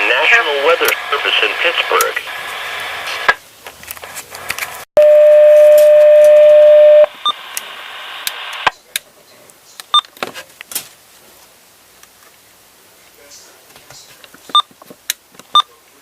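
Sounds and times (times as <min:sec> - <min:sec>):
radio hiss: 0:00.0 - 0:03.4, 0:07.0 - 0:08.8
short beeps: 0:05.0 - 0:07.1.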